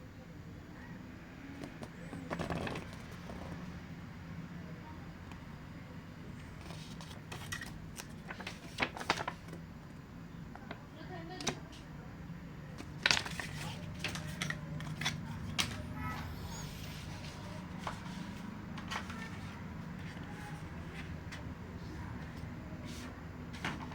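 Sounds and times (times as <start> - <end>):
steady low hum: 11.7 - 23.9.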